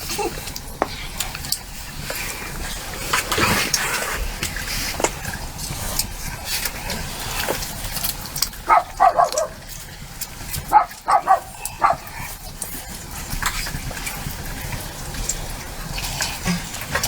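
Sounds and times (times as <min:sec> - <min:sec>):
animal yelping: 0:08.6 - 0:09.6, 0:10.6 - 0:12.4.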